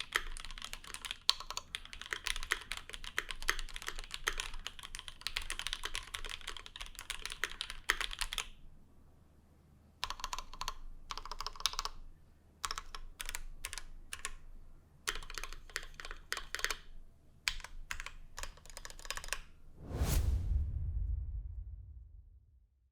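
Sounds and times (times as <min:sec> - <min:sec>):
mechanical keyboard typing: 0:00.0 - 0:08.6, 0:10.0 - 0:12.0, 0:12.6 - 0:19.5
falling whoosh with bass swell: 0:19.8 - 0:22.8.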